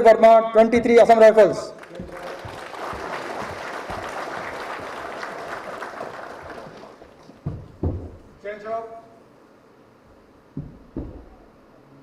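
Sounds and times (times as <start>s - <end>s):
audience applauding: 1.7s - 7.5s.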